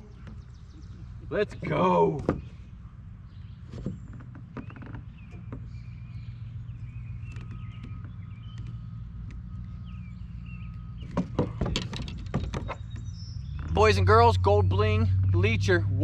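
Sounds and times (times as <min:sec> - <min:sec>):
knocks and clatters: 0:03.7 - 0:05.7, 0:11.0 - 0:13.8.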